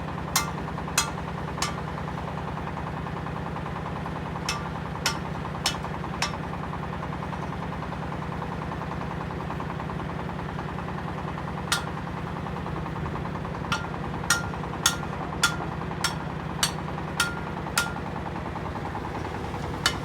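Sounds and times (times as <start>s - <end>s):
diesel engine running: 0.0s - 20.0s.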